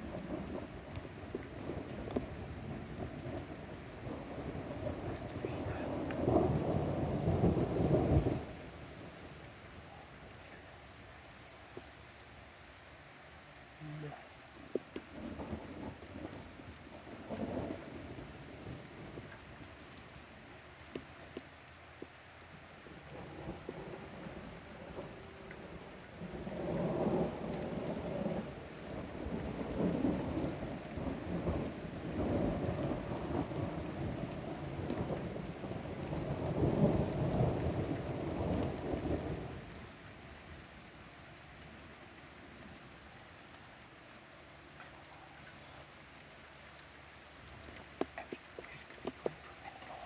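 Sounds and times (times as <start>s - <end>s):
thunder rumbling: 0.0s - 10.8s, 14.5s - 21.4s, 22.4s - 40.9s
steady rainfall: 0.0s - 50.0s.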